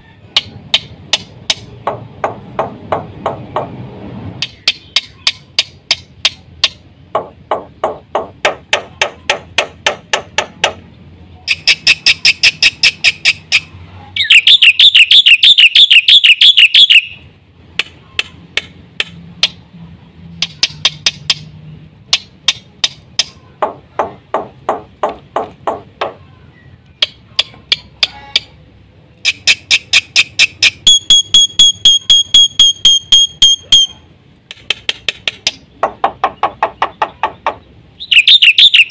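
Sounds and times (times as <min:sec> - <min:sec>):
bird singing: 0:11.3 - 0:17.3, 0:26.0 - 0:28.5, 0:35.5 - 0:38.9.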